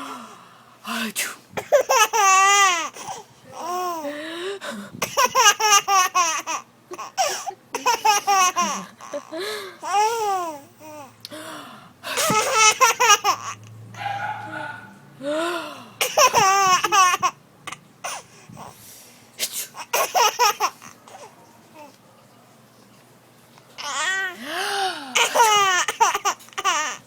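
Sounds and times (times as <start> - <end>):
small child laughing: 5.0 - 10.5, 12.2 - 13.6, 16.0 - 17.4, 25.2 - 27.0.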